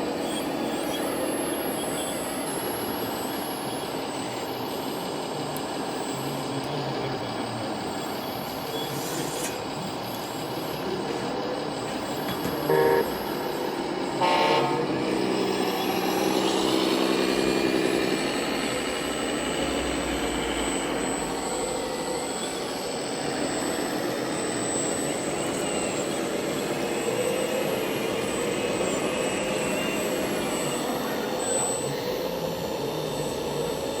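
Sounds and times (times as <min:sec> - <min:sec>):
toy truck engine sound: 0:00.1 - 0:34.0
steady machine hum: 0:09.6 - 0:34.0
short horn toots: 0:12.6 - 0:13.2, 0:14.2 - 0:15.0.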